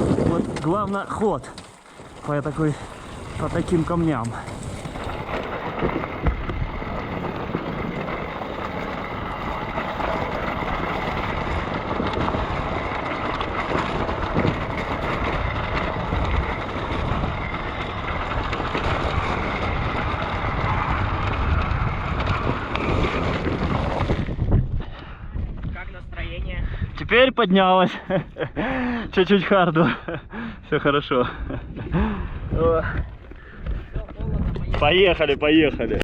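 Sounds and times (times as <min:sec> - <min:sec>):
wind buffeting microphone: 0:00.0 - 0:27.4, 0:30.0 - 0:36.0
motorcycle engine running: 0:01.4 - 0:24.6.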